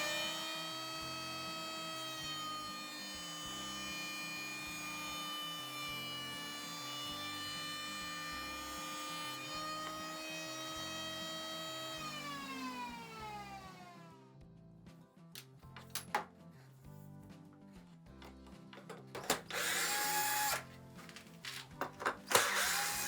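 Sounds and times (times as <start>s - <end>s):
jointer high whine: 19.5s - 20.6s, 22.3s - 23.0s.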